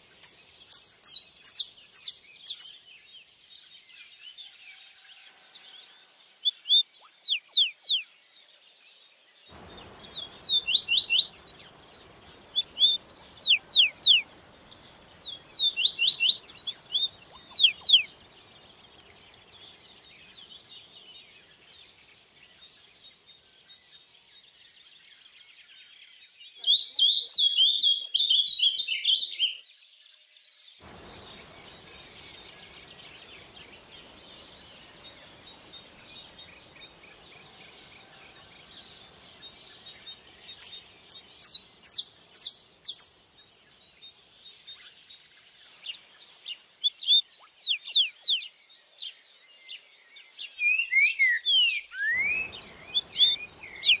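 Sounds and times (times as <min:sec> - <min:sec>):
songbirds singing and chirping: 0:00.0 - 0:54.0
stream water rushing: 0:09.5 - 0:19.6, 0:52.0 - 0:54.0.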